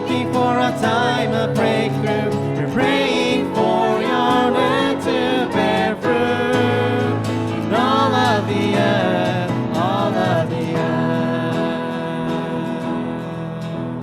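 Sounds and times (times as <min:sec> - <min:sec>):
person singing: 0:00.0 - 0:14.0
worship band music: 0:00.0 - 0:14.0.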